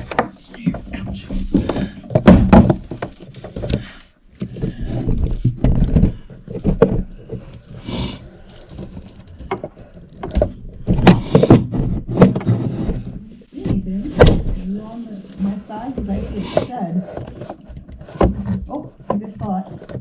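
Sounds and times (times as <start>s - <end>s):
wire rustling and scraping in wall: 0.0s - 20.0s.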